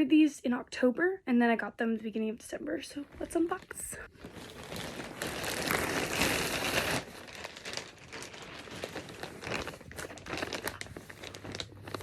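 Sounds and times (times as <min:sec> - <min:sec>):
packaging crinkling: 0:03.2 - 0:12.0.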